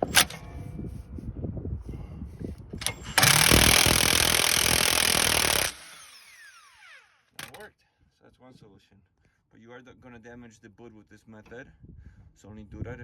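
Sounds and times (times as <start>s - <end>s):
power tool running: 2.8s - 7.6s.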